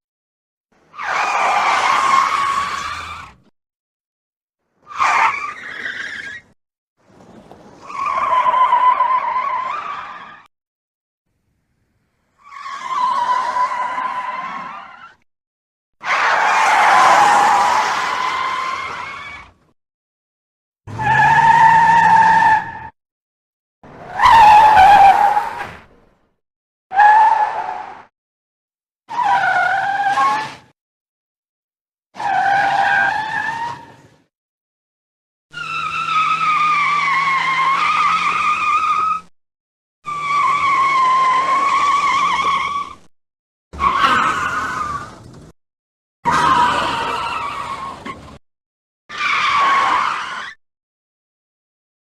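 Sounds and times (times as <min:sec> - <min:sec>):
car tire skids: 0:00.8 - 0:03.5, 0:04.8 - 0:10.5, 0:16.0 - 0:19.6, 0:20.9 - 0:23.0, 0:23.9 - 0:26.0, 0:35.6 - 0:39.3, 0:40.1 - 0:43.0, 0:43.8 - 0:45.5, 0:46.3 - 0:48.4, 0:49.1 - 0:50.6.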